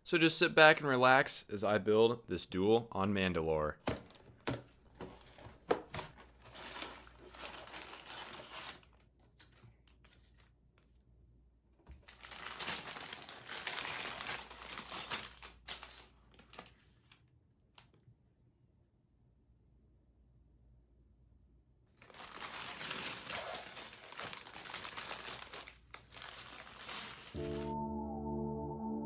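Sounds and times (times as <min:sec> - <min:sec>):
plastic bags crinkling: 0:06.0 - 0:09.0, 0:12.0 - 0:16.7, 0:22.0 - 0:27.8.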